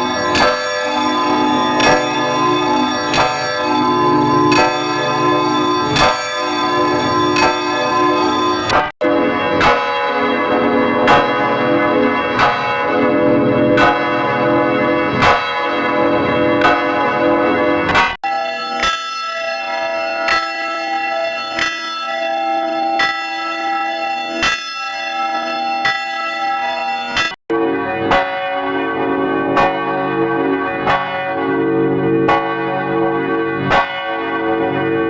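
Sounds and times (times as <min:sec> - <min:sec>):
deeper-toned bell peal: 0:00.0 - 0:23.8
church bells ringing: 0:00.0 - 0:35.0.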